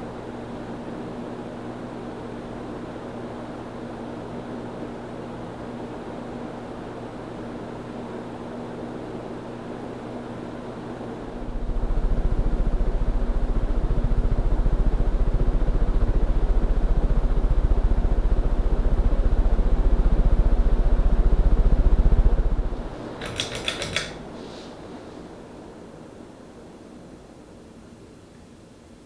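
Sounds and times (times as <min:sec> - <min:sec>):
ceiling fan motor hum: 0:00.0 - 0:29.0
sharp clicks: 0:22.8 - 0:24.2.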